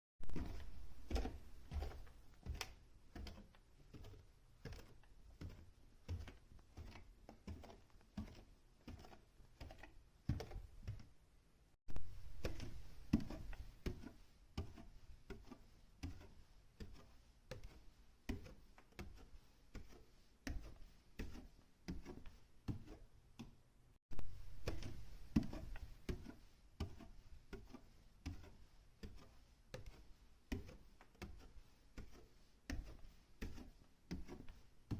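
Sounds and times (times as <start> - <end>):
footsteps on staircase: 0.2 - 9.0.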